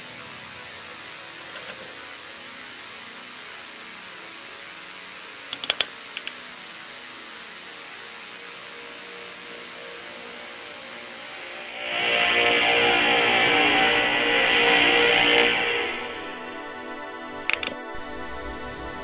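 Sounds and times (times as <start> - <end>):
steady hiss: 0.0 - 19.0
sharp clicks: 1.5 - 2.1, 5.5 - 6.6, 17.4 - 17.9.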